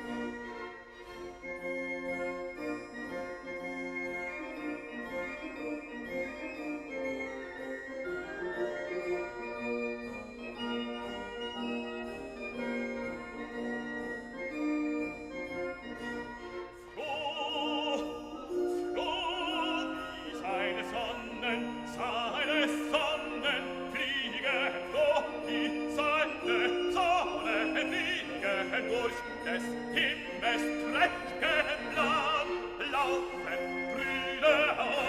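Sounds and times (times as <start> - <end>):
keyboard instrumental music: 0.0 - 35.0
operatic singer with vibrato: 16.9 - 35.0.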